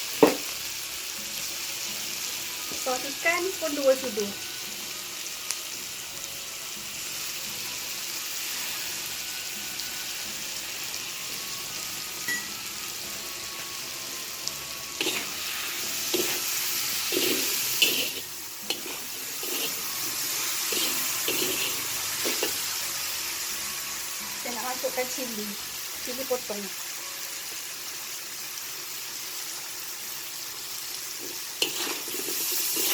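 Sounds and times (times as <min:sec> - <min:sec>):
food sizzling in a hot pan: 0:00.0 - 0:32.9
spatula scraping a pan: 0:14.9 - 0:22.9, 0:31.2 - 0:32.9.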